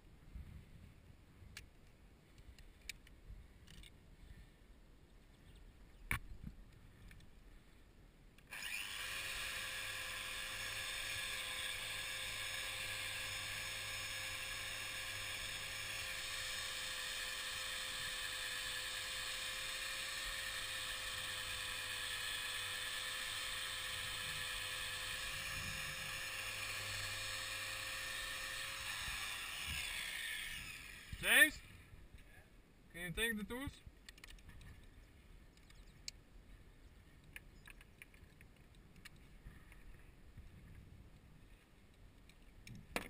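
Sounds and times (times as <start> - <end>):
electric sander running: 8.5 - 31.2.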